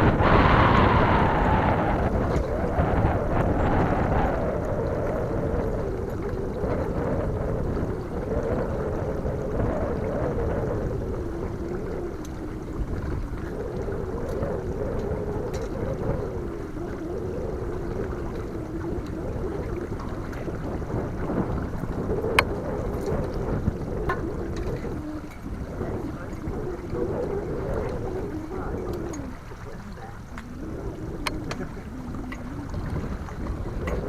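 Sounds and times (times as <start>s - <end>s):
boat motor humming: 0.0s - 34.0s
low rumble of wind: 0.0s - 34.0s.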